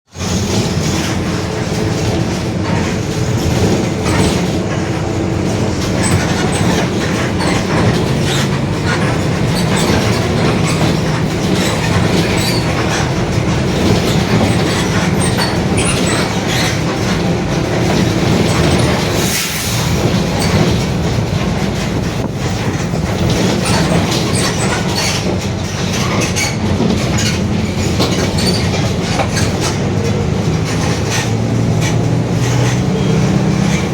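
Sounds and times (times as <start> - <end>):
diesel bus engine running: 0.1 - 33.9
body and fittings rattling: 0.2 - 33.9
growling differential: 19.9 - 33.9.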